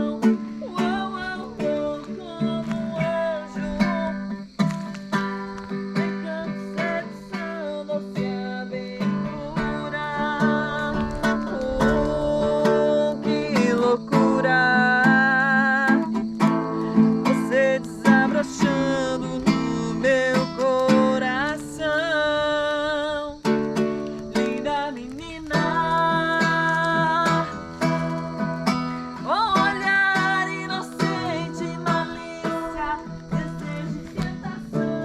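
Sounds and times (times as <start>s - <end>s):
person singing: 0.0s - 5.0s, 5.9s - 23.6s, 24.3s - 35.0s
acoustic guitar playing: 0.0s - 35.0s.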